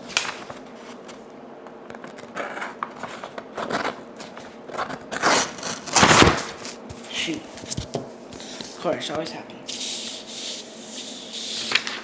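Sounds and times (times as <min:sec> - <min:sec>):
knife cutting paper: 0:04.7 - 0:06.8.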